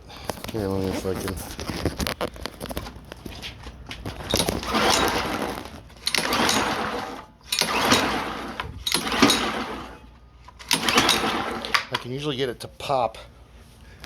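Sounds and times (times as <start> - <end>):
recoil starter cranking whir: 4.0 - 12.2.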